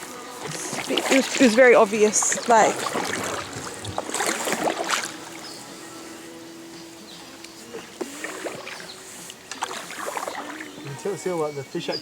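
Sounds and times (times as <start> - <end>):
boat knocks: 0.0 - 5.6
paddle splashing in water: 0.0 - 11.3
water hiss: 0.0 - 11.4
water dripping: 0.4 - 5.6.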